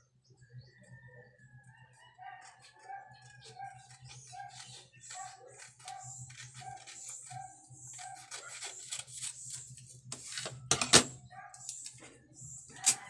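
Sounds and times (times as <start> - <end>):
paper and tape crackling: 3.5 - 10.6.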